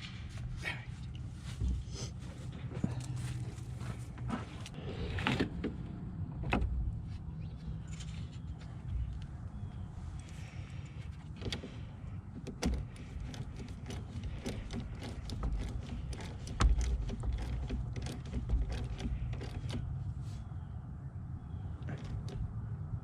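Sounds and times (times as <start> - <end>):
steady low rumble: 0.0 - 23.0
hand tools clicking and clunking: 11.4 - 19.9, 21.8 - 22.5.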